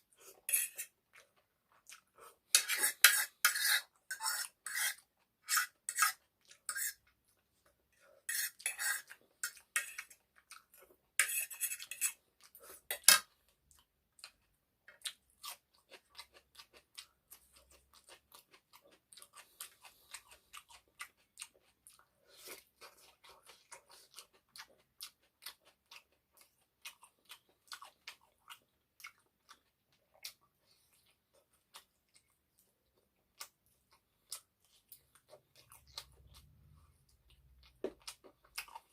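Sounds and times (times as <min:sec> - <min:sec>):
cutlery scraping on dish: 0:00.5 - 0:00.9, 0:02.6 - 0:07.0, 0:08.3 - 0:10.1, 0:11.2 - 0:12.2, 0:12.9 - 0:13.3
chewing sounds: 0:13.5 - 0:38.9.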